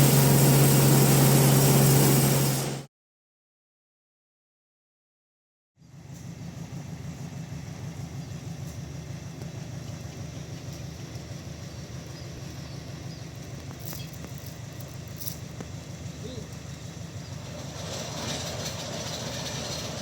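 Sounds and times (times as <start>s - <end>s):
engine running with low rumble: 0.0s - 2.8s, 5.8s - 20.0s.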